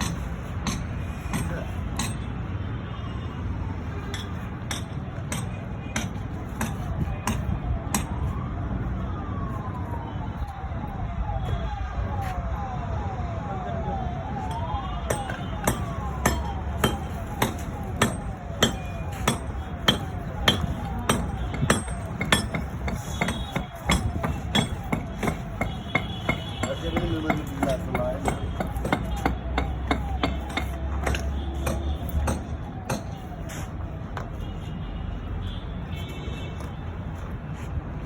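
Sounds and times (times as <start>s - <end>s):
hammer strikes: 0.0s - 2.4s, 4.0s - 8.2s, 14.5s - 34.3s
siren wailing and yelping: 6.9s - 34.2s.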